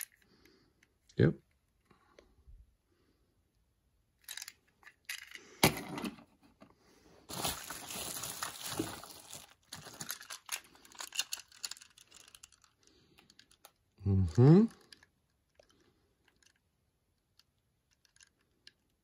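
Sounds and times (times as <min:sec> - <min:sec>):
packaging rustling and crackling: 0:07.3 - 0:12.8.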